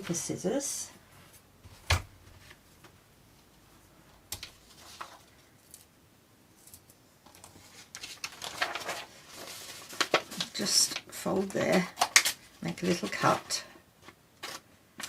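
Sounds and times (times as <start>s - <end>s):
paper rustling: 4.4s - 5.5s, 7.3s - 15.0s.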